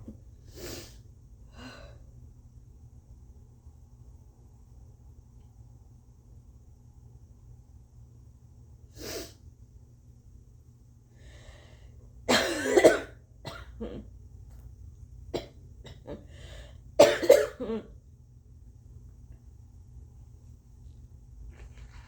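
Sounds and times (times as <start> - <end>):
person coughing wetly: 12.3 - 14.1, 15.4 - 16.3, 17.0 - 18.0.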